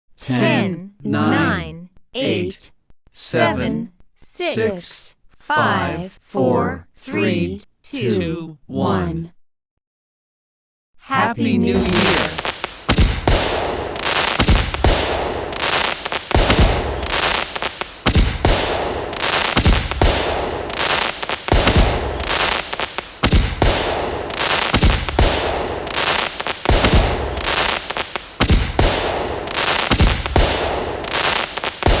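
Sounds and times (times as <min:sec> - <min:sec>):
falling firework whistle: 0:11.8 - 0:32.0
fireworks banging and crackling: 0:11.8 - 0:32.0.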